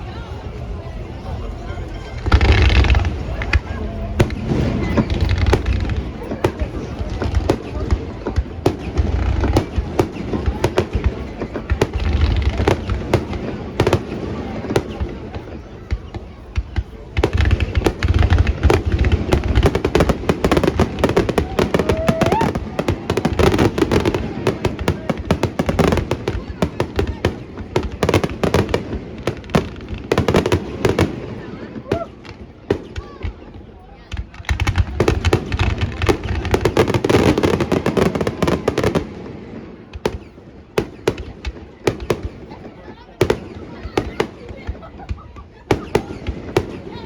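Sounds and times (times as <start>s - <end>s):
fireworks bangs and crackles: 0.0s - 47.0s
rising firework whistle: 21.2s - 22.8s.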